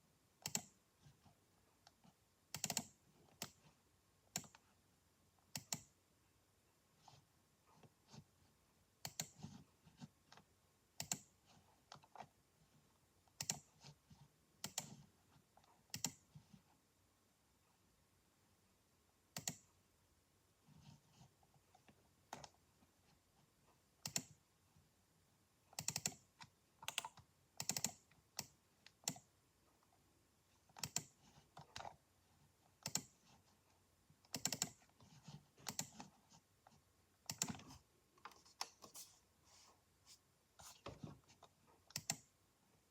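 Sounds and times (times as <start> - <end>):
computer clicking and grinding: 0.4 - 0.8, 2.5 - 3.6, 25.8 - 29.3, 30.7 - 32.0, 32.7 - 33.3, 34.3 - 36.2, 37.2 - 38.8, 41.3 - 42.3.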